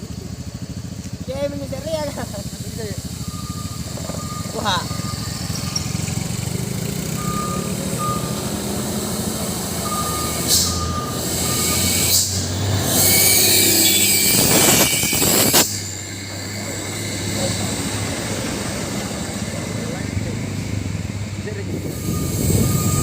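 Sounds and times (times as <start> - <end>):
truck engine running: 0.0 - 23.0
short beeps: 3.2 - 8.9, 9.8 - 12.1, 21.9 - 23.0
loud air hiss with high tone: 9.0 - 19.4
air hiss bursts: 9.7 - 16.0.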